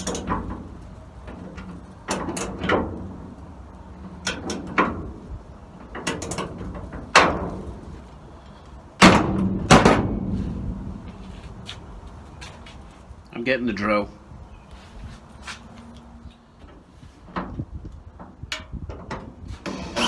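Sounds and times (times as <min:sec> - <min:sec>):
loud metal knocks: 0:09.0 - 0:11.8.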